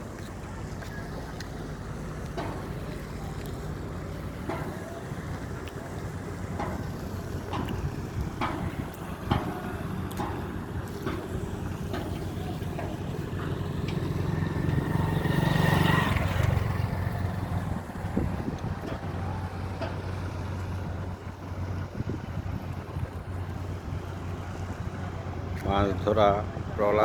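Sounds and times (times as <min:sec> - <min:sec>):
boat engine droning: 0:00.0 - 0:27.0
light clicks and knocks: 0:02.2 - 0:21.1.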